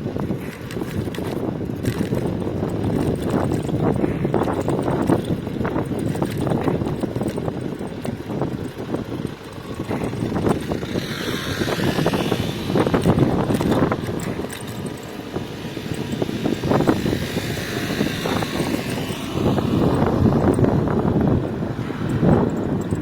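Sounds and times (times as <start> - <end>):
vehicle passing by: 9.1 - 23.0.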